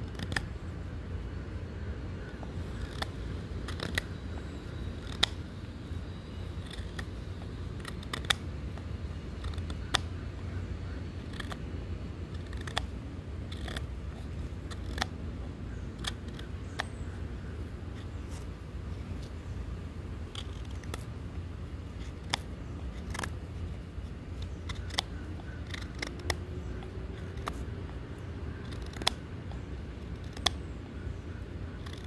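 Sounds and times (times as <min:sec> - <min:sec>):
low steady rumble: 0:00.0 - 0:32.0.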